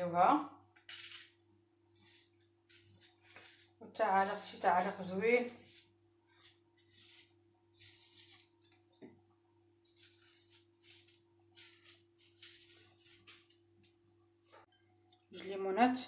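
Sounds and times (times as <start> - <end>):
rustles and scrapes: 1.9 - 8.8, 9.9 - 13.6.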